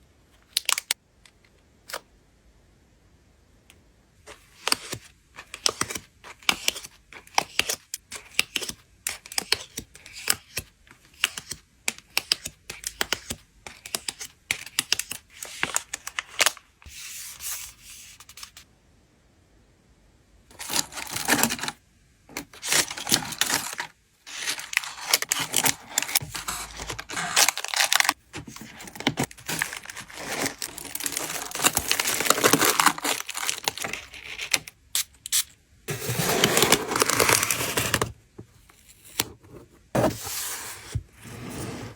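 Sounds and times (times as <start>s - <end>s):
plastic wrapping crinkling: 22.6s - 34.5s
packaging tearing: 22.6s - 38.1s.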